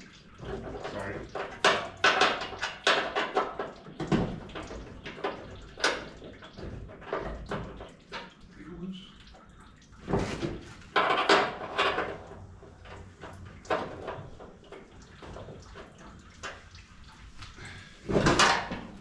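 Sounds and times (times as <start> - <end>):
tools and metal parts clunking: 10.2 - 14.5, 18.1 - 19.0.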